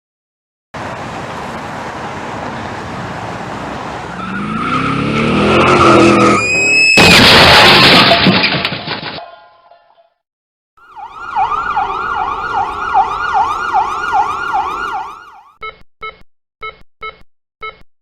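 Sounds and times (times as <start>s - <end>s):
car engine speeding closer: 0.8s - 6.5s
car crash impact and debris: 6.6s - 9.5s.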